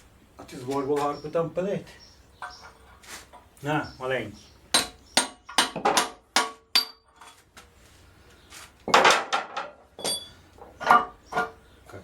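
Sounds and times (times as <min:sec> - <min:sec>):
hammer striking chisel on steel: 0:04.7 - 0:07.0.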